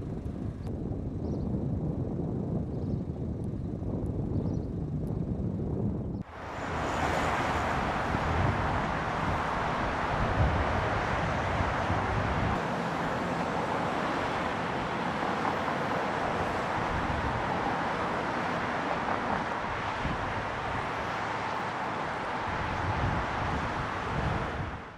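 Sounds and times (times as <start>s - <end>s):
road traffic: 0.0s - 1.2s, 6.2s - 24.9s
wind: 0.0s - 24.9s
wind rumble on microphone: 0.0s - 24.9s.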